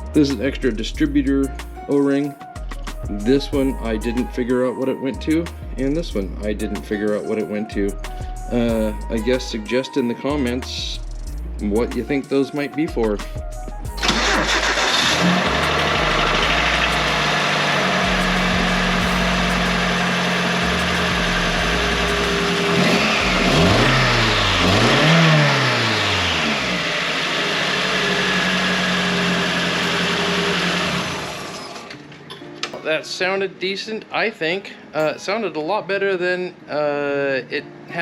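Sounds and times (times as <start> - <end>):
car engine idling and revving: 14.0 - 31.9.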